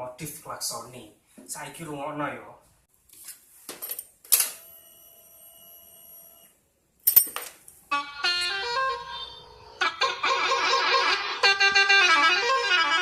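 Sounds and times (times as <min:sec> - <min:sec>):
musical horn tune: 0:07.9 - 0:13.0.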